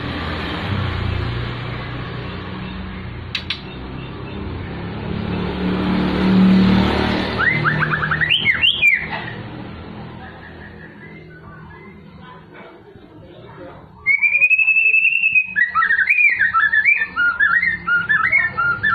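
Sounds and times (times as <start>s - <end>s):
low traffic rumble: 0.0s - 18.9s
sharp clicks: 3.3s - 3.8s
bird whistling sliding notes: 7.3s - 9.4s.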